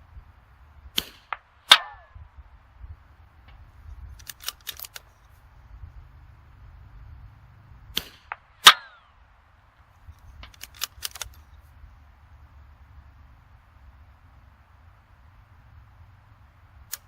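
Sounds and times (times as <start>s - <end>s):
rifle shot: 0.9s - 2.2s, 7.9s - 9.1s
light clicks: 3.5s - 5.4s, 10.1s - 11.6s
rifle bolt metallic clicks: 4.2s - 5.3s, 10.4s - 11.6s.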